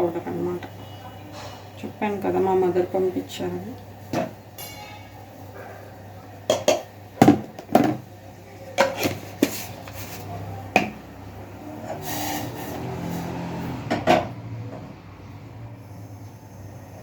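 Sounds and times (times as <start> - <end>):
kitchen utensils clattering: 4.2 - 8.1, 8.8 - 11.0.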